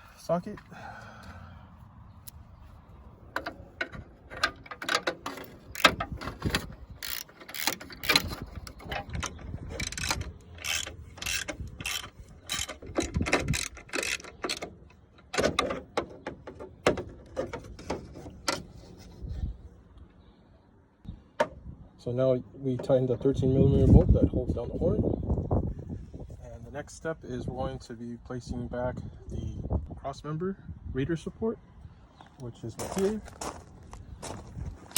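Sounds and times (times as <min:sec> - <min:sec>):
ratchet wrench clicking: 0:07.0 - 0:08.4, 0:09.8 - 0:14.6.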